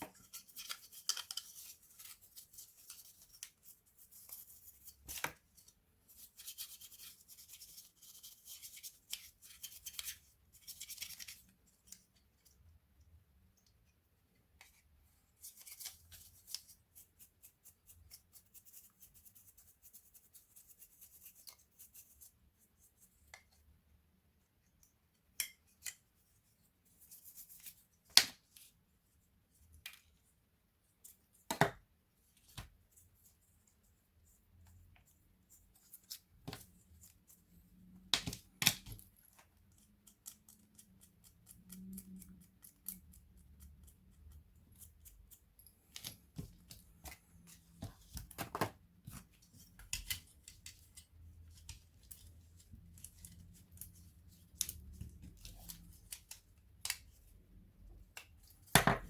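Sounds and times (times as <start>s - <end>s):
clicks and knocks of small parts: 0.0s - 2.1s.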